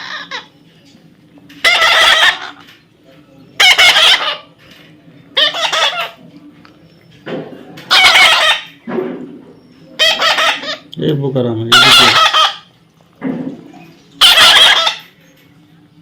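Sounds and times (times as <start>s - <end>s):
parrot squawking: 0.0s - 0.6s, 1.6s - 2.7s, 3.6s - 4.5s, 5.3s - 6.2s, 7.9s - 8.8s, 9.9s - 11.0s, 11.6s - 12.8s, 14.1s - 15.2s.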